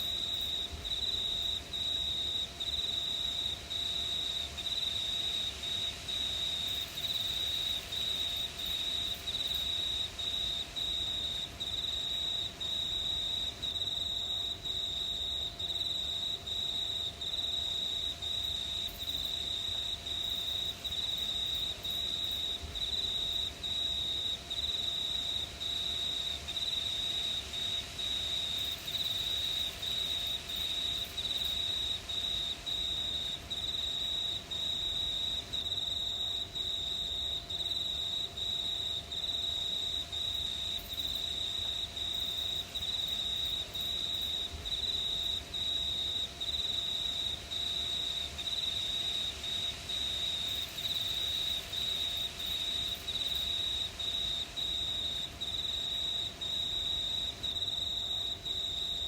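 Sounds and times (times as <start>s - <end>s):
crickets chirping: 0.0s - 59.0s.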